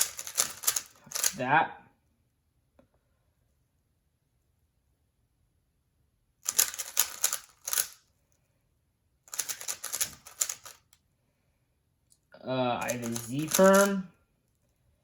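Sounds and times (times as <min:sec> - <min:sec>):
plastic puzzle cube clicking: 0:00.0 - 0:01.4, 0:06.4 - 0:08.0, 0:09.3 - 0:11.0, 0:12.8 - 0:14.0.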